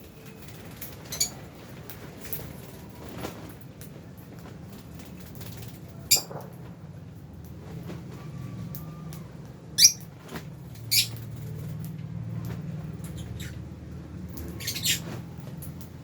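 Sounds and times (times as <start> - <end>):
high-pitched bird chirps: 9.8 - 10.0, 10.9 - 11.2, 14.6 - 15.0.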